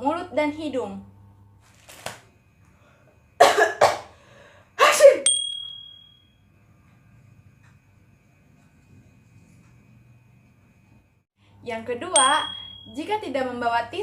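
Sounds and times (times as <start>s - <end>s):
person coughing: 3.4s - 4.2s
short high ding tone: 12.2s - 13.0s.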